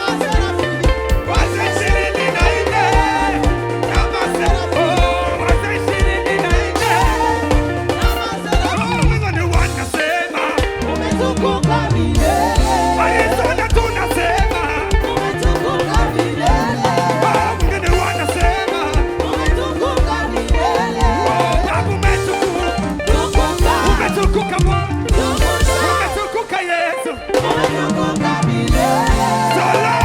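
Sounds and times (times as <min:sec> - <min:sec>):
upbeat gospel band playing: 0:00.0 - 0:30.0.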